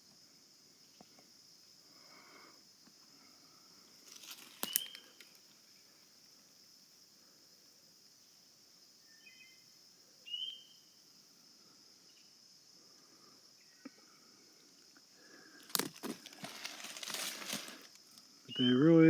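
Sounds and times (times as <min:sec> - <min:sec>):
high insect drone: 0:00.0 - 0:19.0
rustling and crunching: 0:04.1 - 0:05.1, 0:15.6 - 0:18.3
bird chirps: 0:04.6 - 0:05.2, 0:09.1 - 0:09.6, 0:10.2 - 0:10.8, 0:18.5 - 0:19.0.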